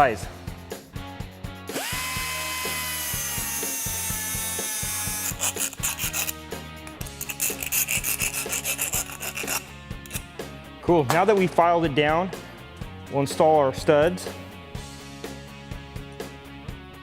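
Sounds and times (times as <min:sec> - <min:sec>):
faint background music: 0:00.0 - 0:17.0
rotary power tool whining: 0:01.7 - 0:06.3
hand file rasping on metal: 0:02.3 - 0:06.4, 0:07.0 - 0:10.3.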